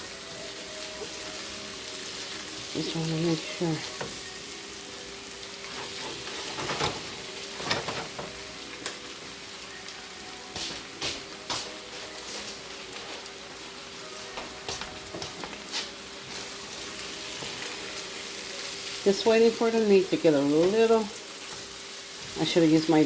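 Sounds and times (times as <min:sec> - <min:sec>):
chicken sizzling in pan: 0:00.0 - 0:23.0
utensil scraping pan: 0:05.6 - 0:08.0.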